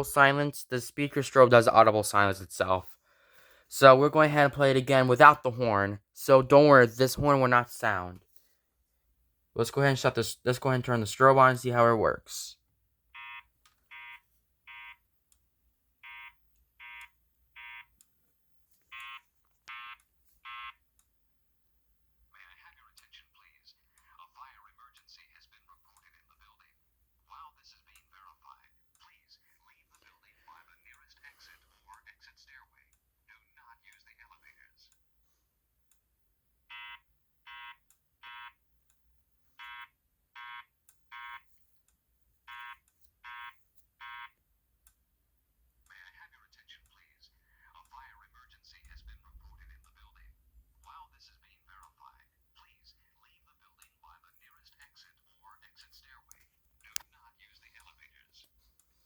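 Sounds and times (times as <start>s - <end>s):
fire alarm beeps: 16.1s - 17.8s.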